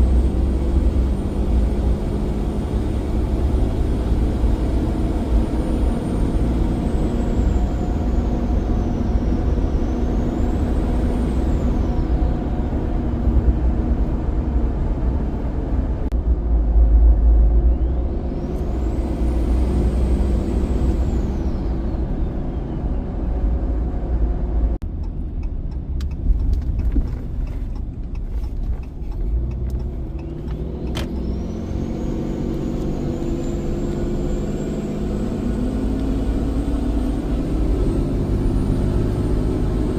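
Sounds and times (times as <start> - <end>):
diesel engine drone: 0.0 - 39.9.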